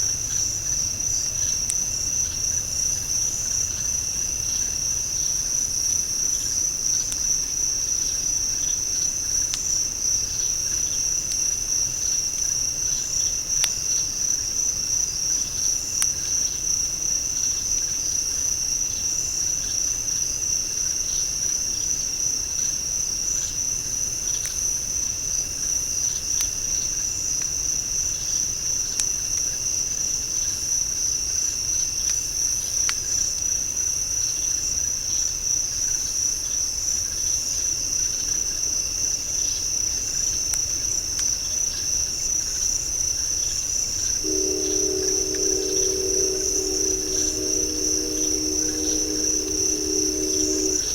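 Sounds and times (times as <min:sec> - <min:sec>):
crickets trilling high: 0:44.2 - 0:50.9
lower cricket trill: 0:44.2 - 0:50.9.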